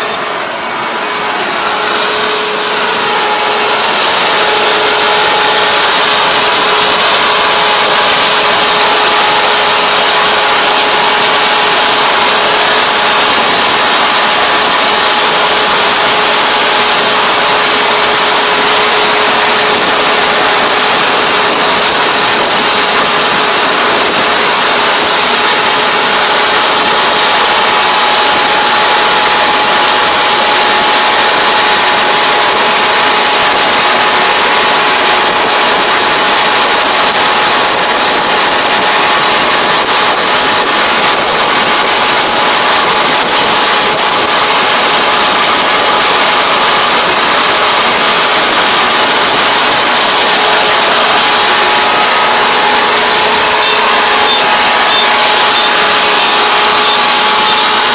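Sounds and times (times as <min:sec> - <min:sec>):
combine harvester drone: 0:00.0 - 0:57.9
mechanical whine: 0:00.0 - 0:57.9.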